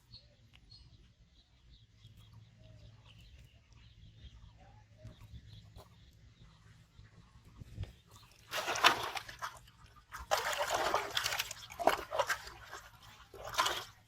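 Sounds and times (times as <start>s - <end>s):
water splashing and sloshing: 7.1s - 14.0s.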